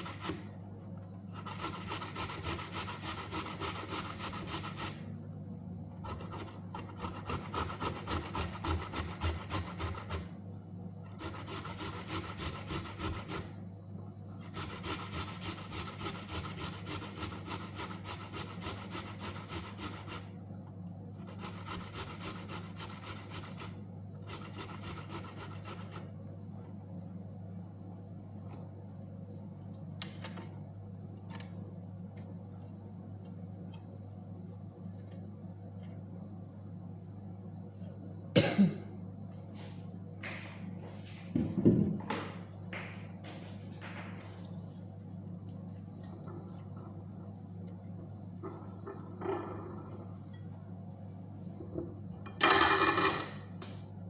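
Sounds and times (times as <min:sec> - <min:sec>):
ginger rasping on a grater: 0:00.0 - 0:00.5, 0:01.3 - 0:05.0, 0:06.0 - 0:10.4, 0:11.0 - 0:13.6, 0:14.4 - 0:20.4, 0:21.2 - 0:26.2.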